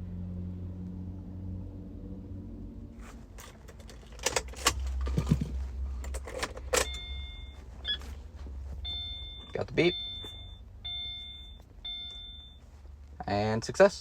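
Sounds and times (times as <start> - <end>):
car keys jangling: 3.4 - 8.1.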